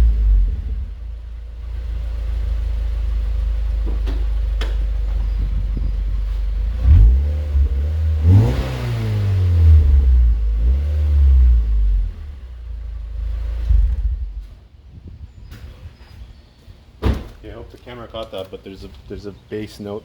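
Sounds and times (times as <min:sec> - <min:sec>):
car engine idling and revving: 0:00.0 - 0:14.6.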